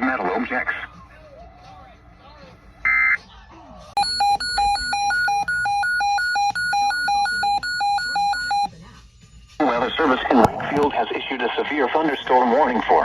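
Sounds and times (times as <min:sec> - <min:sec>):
two-pitch electronic beeping: 0:04.0 - 0:08.7.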